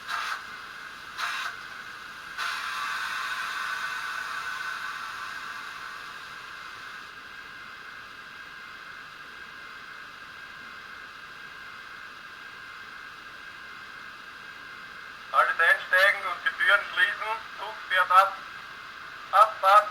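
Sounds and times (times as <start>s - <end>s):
steam hiss: 0.0s - 7.7s.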